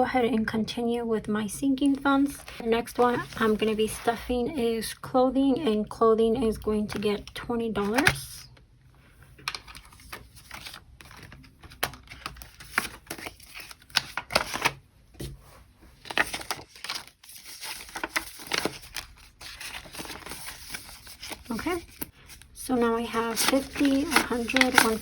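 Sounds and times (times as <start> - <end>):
paper banknotes rustling: 1.8 - 4.4, 9.4 - 14.8, 15.9 - 25.0.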